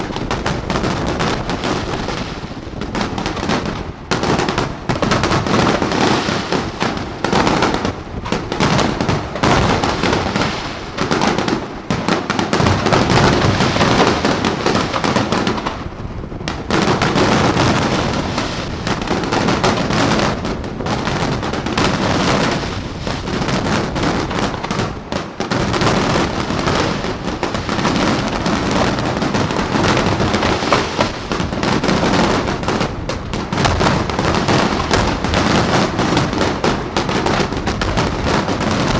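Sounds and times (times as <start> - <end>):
fireworks bursting and crackling: 0.0 - 38.9.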